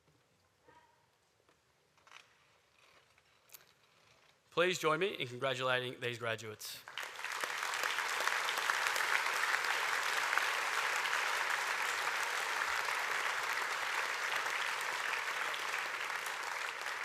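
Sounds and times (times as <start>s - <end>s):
audience applauding: 6.8s - 17.0s.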